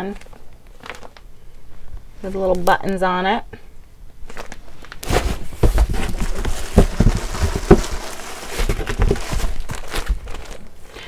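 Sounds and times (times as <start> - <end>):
packaging rustling and crinkling: 0.2 - 1.2, 4.2 - 11.0
soft bumps: 5.0 - 10.6.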